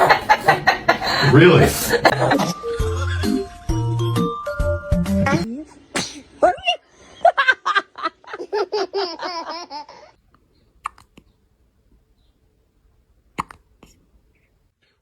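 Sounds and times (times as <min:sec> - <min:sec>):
pulsing laughter: 0:00.0 - 0:03.6, 0:07.0 - 0:10.1
baby hiccups: 0:10.8 - 0:11.2, 0:13.3 - 0:14.0.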